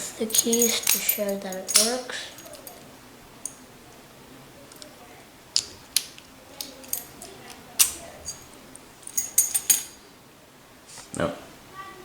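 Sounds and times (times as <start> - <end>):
keys jingling: 0.0 - 3.6, 5.6 - 10.0.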